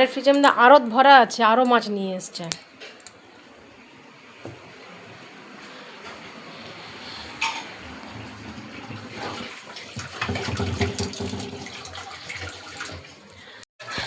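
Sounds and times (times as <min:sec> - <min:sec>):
running water: 0:03.3 - 0:14.0.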